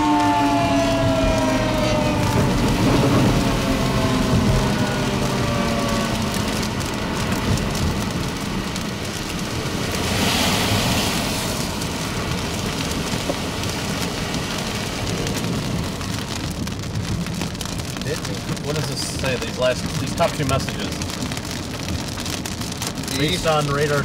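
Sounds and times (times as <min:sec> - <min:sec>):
rain falling on a vehicle: 0:00.0 - 0:24.0.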